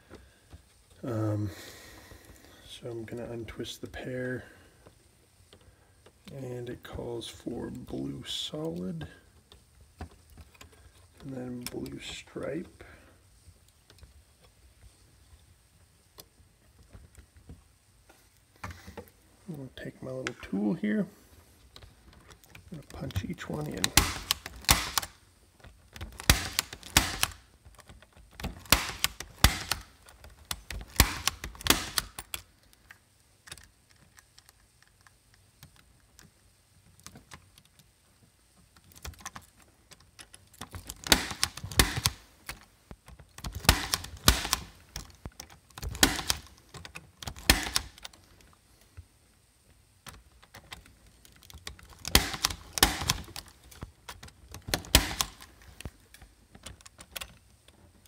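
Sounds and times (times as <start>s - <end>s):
punch-down tool clicking: 23.2s - 25.1s, 25.9s - 27.4s, 28.4s - 32.4s, 43.4s - 45.2s, 45.8s - 48.1s, 51.5s - 53.5s, 54.2s - 55.5s.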